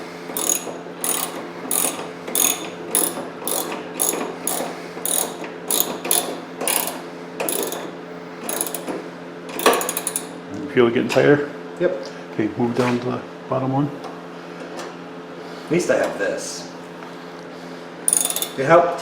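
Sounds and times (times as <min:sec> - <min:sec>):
ratchet wrench clicking: 0:00.3 - 0:09.0, 0:09.6 - 0:10.4, 0:18.1 - 0:18.7.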